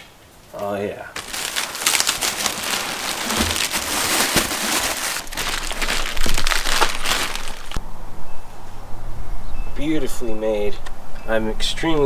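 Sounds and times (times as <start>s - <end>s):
packing material crinkling: 0.6s - 7.8s.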